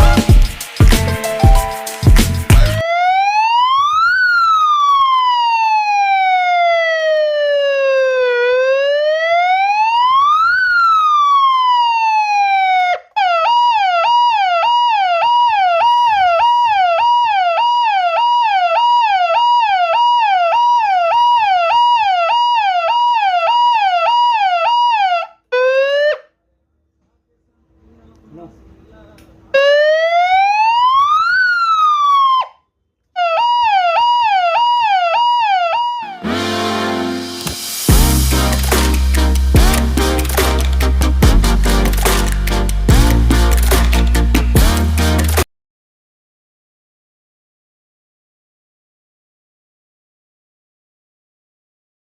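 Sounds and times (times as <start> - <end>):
electronic siren wail and yelp: 2.7 - 26.3, 29.6 - 32.6, 33.2 - 36.4.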